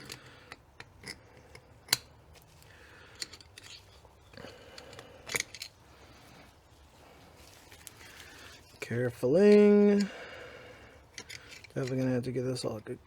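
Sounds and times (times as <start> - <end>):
metallic clicks of steel parts: 0.0 - 6.4, 7.7 - 10.4, 11.0 - 12.8.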